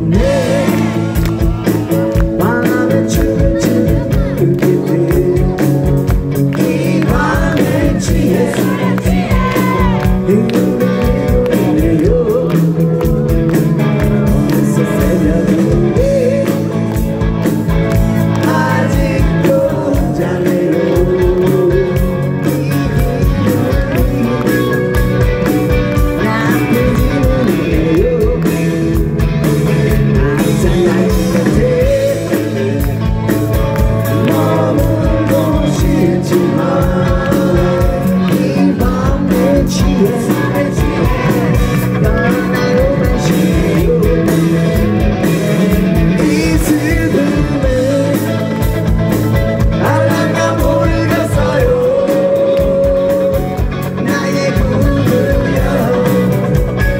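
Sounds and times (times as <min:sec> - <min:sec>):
person singing: 0:00.0 - 0:17.2, 0:17.9 - 0:48.9, 0:49.6 - 0:56.9
drums steady beat: 0:00.0 - 0:56.9
punk rock band playing live: 0:00.0 - 0:56.9.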